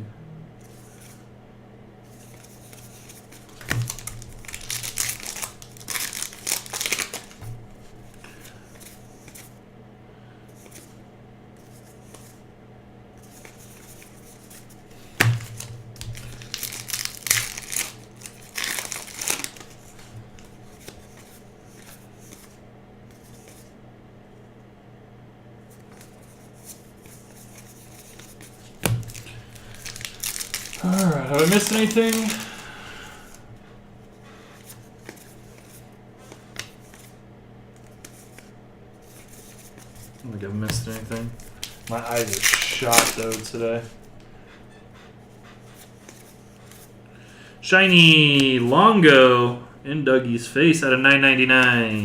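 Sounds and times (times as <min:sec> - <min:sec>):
steady low hum: 0:00.0 - 0:52.0
foil wrappers tearing and crinkling: 0:03.0 - 0:07.4, 0:15.0 - 0:21.0, 0:27.6 - 0:33.4, 0:39.2 - 0:44.2.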